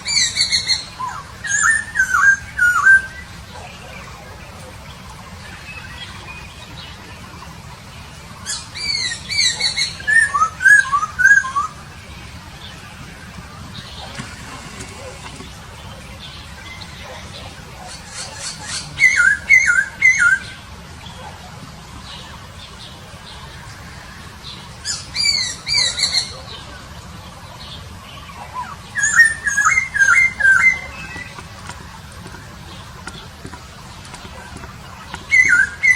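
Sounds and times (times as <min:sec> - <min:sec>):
bird whistle: 0:00.0 - 0:04.0, 0:08.4 - 0:11.8, 0:28.2 - 0:33.5, 0:34.1 - 0:35.9
songbird whistling: 0:00.0 - 0:07.6, 0:08.3 - 0:21.4, 0:22.1 - 0:26.8, 0:28.1 - 0:35.9
low background rumble: 0:00.0 - 0:35.9.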